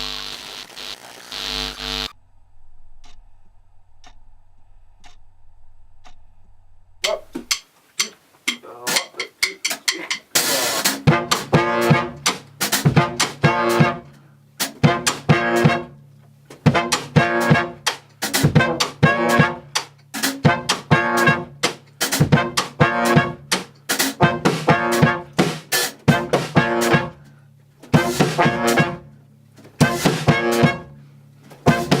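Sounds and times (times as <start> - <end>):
faint ticks: 4.0 - 5.3
brass band with drums: 10.3 - 27.3, 27.9 - 29.2, 29.8 - 31.0, 31.6 - 32.0.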